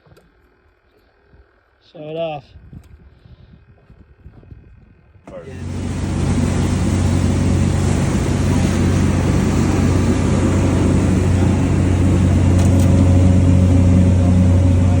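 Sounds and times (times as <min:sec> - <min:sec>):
engine running with low hum: 0:00.0 - 0:15.0.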